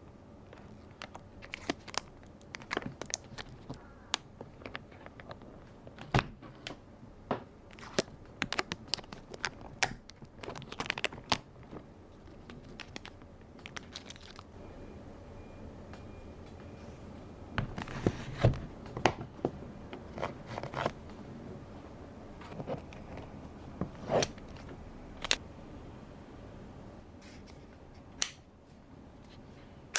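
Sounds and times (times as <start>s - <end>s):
packaging crinkling: 0.8s - 3.8s, 7.8s - 14.5s.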